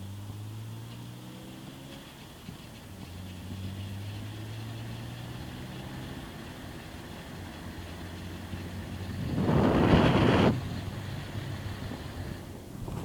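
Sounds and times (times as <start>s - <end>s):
car engine low drone: 0.0s - 13.0s.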